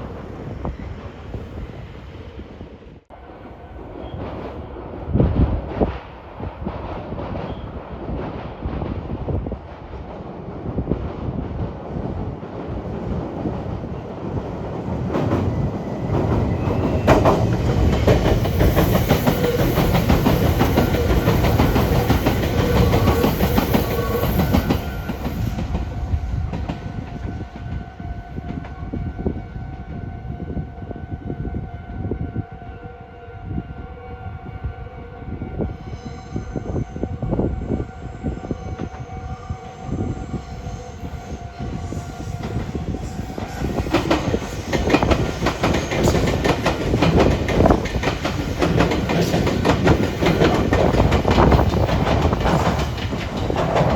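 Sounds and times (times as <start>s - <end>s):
train wheels clattering on rails: 5.2s - 28.8s, 42.2s - 53.9s
electric train whine: 12.8s - 53.9s.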